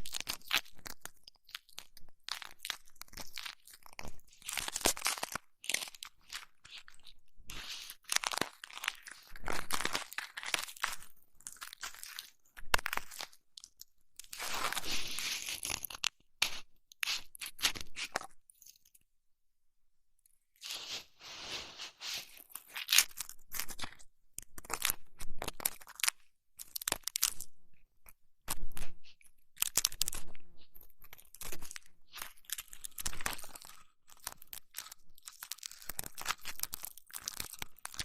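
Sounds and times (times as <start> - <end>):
crunching and rubbing on microphone: 0.0 - 13.3, 14.2 - 18.3, 20.6 - 26.1, 28.5 - 38.0.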